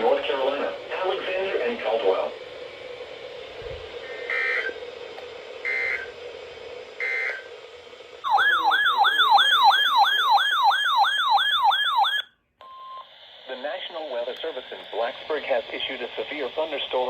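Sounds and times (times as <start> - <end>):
electronic siren tone sweeping: 4.0 - 4.8, 5.6 - 6.1, 7.0 - 7.5, 8.2 - 12.3
emergency alert data tones: 4.0 - 4.8, 5.7 - 6.1, 8.2 - 13.0.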